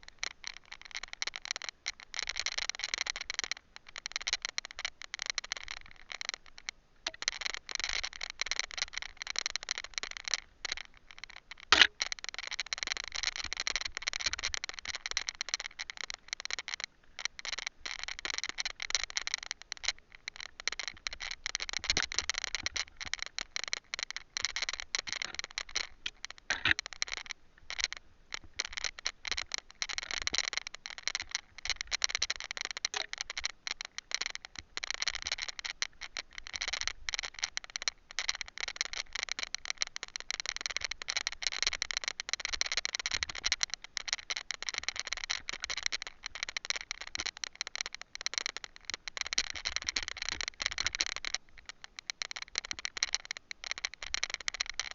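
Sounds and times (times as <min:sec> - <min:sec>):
camera rattling in mount: 0:24.4 - 0:26.9.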